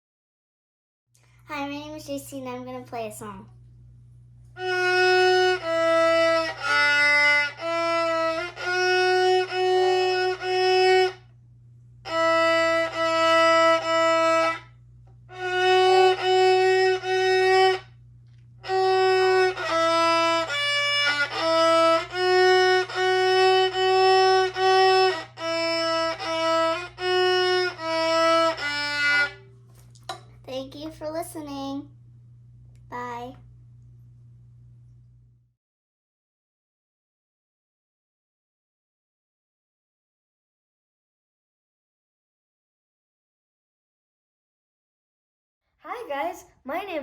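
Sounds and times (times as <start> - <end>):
solo violin playing: 4.6 - 11.2, 12.0 - 18.0, 18.6 - 29.5.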